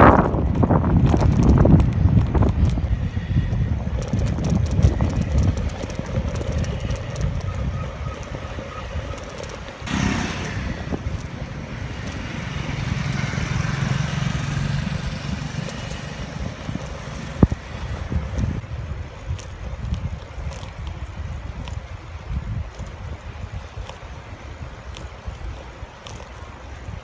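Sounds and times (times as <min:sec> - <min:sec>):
low rumble: 0:00.0 - 0:18.7
motorcycle running: 0:00.1 - 0:18.6.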